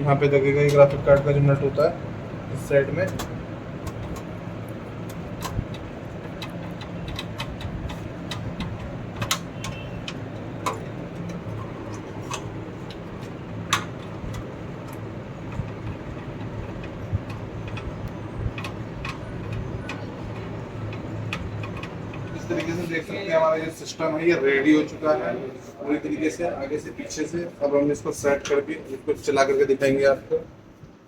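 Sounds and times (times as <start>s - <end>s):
steady low hum: 0.0s - 31.0s
screw clicks and taps in pc case: 3.0s - 22.7s.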